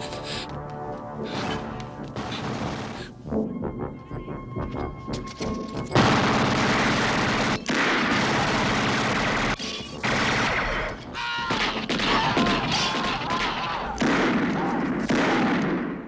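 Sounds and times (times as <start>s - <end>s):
automatic gunfire in long bursts: 2.2s - 3.1s, 6.0s - 10.6s.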